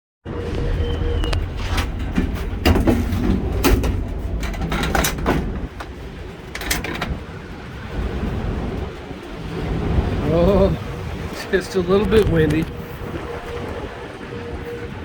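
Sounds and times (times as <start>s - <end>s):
strong wind buffeting microphone: 0.2s - 15.0s
sharp knocks and clatters: 1.3s - 7.3s.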